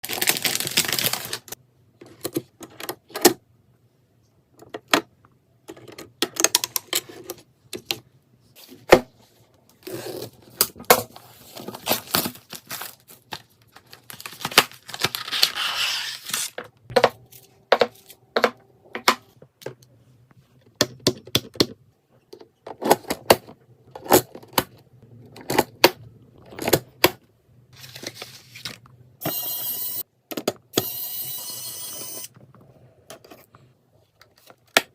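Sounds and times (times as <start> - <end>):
wrapping rustling and tearing: 0.0 - 1.6, 11.2 - 16.6.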